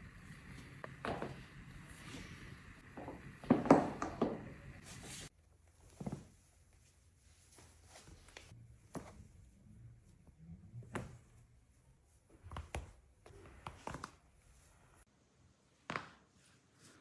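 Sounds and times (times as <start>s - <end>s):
clothing rustling on table: 0.0s - 9.2s.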